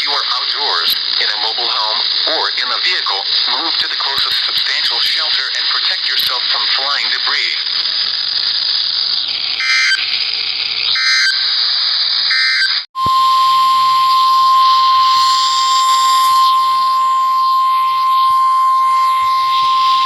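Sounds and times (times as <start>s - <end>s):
radio hiss: 0.0s - 12.3s
screeching digital header bursts: 0.0s - 20.0s
steady warning alarm tone: 0.0s - 20.0s.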